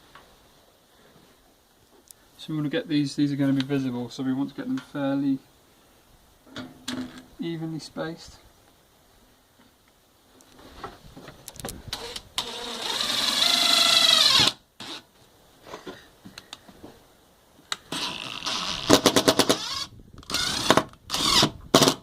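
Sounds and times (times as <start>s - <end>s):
impact driver motor whining: 17.9s - 21.9s.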